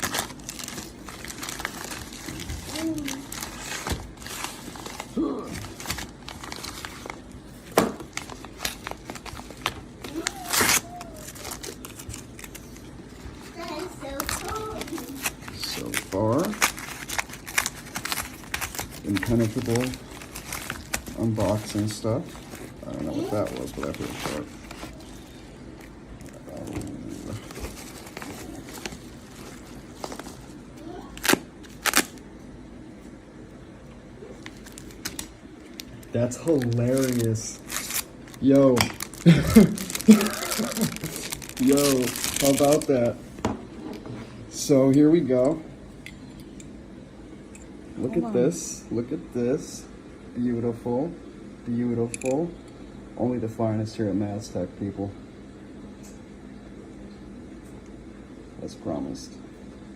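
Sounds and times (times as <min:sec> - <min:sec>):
packaging crinkling and tearing: 0:00.0 - 0:32.2, 0:34.4 - 0:43.2.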